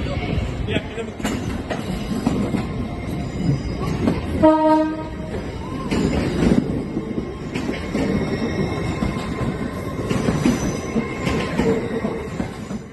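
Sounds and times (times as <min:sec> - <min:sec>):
train rumbling on rails: 0:00.0 - 0:12.9.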